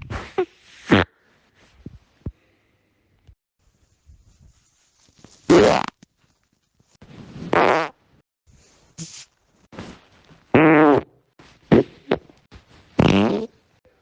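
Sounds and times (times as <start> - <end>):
farts: 0.0 - 1.1, 5.5 - 6.0, 7.2 - 8.0, 10.5 - 11.1, 11.7 - 12.4, 13.0 - 13.6.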